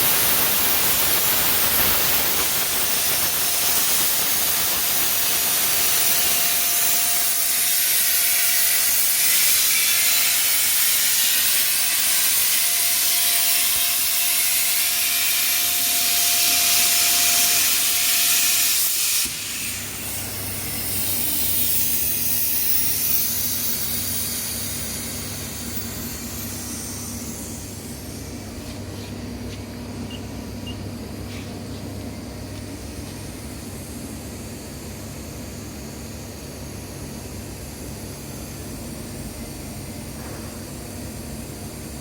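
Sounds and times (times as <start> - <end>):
plasma arc cutting hiss: 0.0 - 28.8
low machine hum: 19.7 - 42.0.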